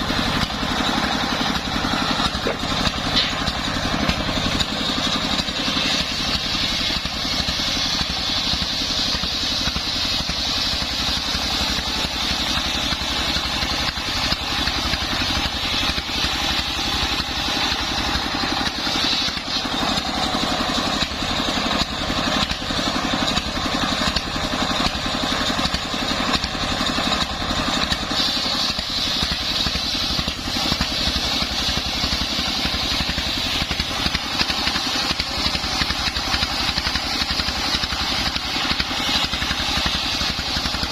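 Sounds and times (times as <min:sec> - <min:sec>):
circular saw blade whine: 0:00.0 - 0:22.7
engine pulsing: 0:00.0 - 0:40.9.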